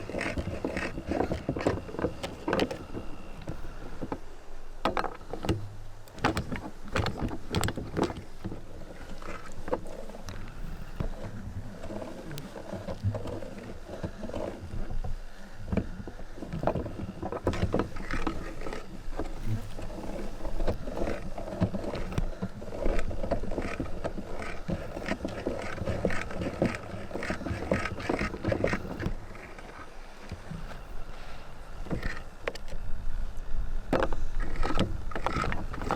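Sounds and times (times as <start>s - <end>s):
soap crackling and knocking: 4.8s - 15.1s.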